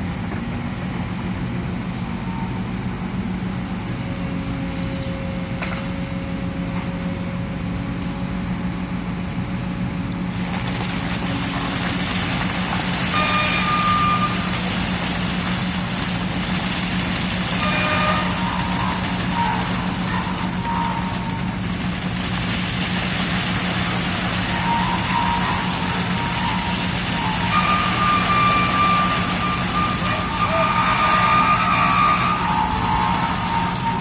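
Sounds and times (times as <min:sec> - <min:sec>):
heavy machine engine running: 0:00.0 - 0:34.0
rushing noise: 0:11.5 - 0:34.0.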